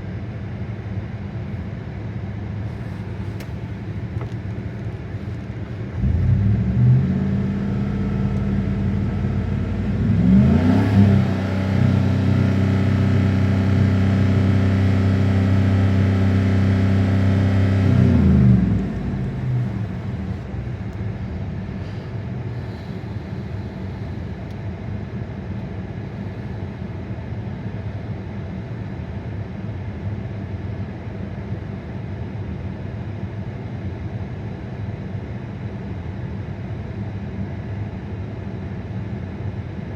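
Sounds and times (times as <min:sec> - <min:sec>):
car engine idling and revving: 0:02.7 - 0:26.7.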